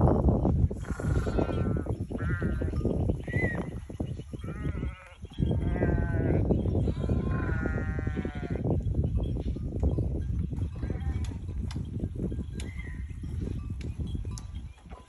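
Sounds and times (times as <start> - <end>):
sheep bleating: 0.8 - 2.7, 4.5 - 8.6.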